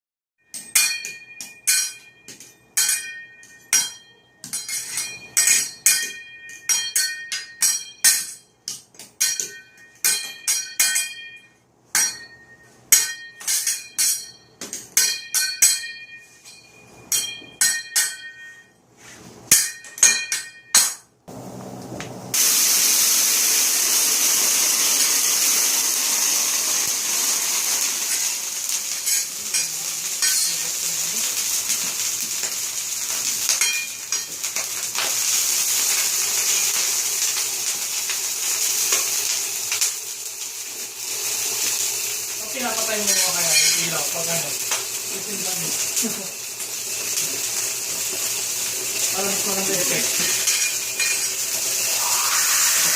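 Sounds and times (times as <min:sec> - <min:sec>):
metal spatulas clanging on griddle: 0:00.5 - 0:18.7, 0:19.5 - 0:21.1, 0:28.9 - 0:30.8, 0:31.4 - 0:35.3, 0:43.0 - 0:44.1, 0:50.2 - 0:51.4
food sizzling on hot griddle: 0:22.3 - 0:52.9.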